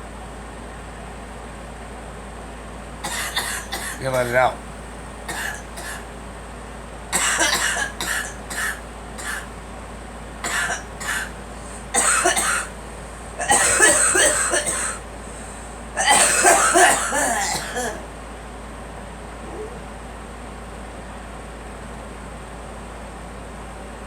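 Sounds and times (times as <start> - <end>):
girl coughing: 3.0 - 4.5, 5.3 - 6.0, 7.2 - 9.5, 10.4 - 12.7, 13.4 - 18.1.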